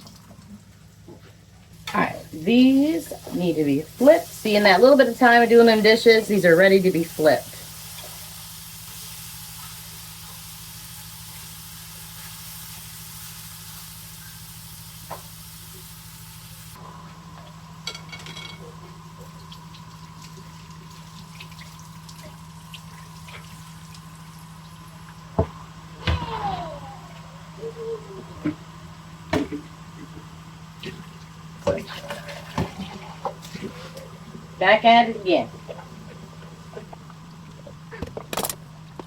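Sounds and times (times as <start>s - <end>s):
sausages sizzling in a frying pan: 1.8s - 16.8s, 20.8s - 25.4s.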